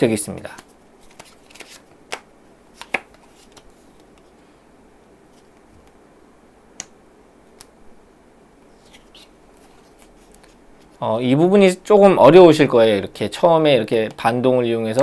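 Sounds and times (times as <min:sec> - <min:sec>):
faint room hiss: 0:00.0 - 0:15.0
playing cards snapping: 0:00.5 - 0:04.2.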